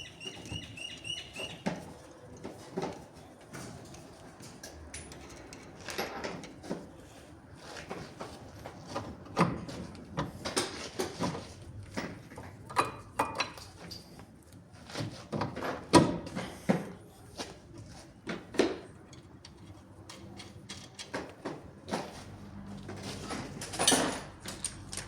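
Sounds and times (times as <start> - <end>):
metal tools clinking and knocking: 23.0 - 25.0.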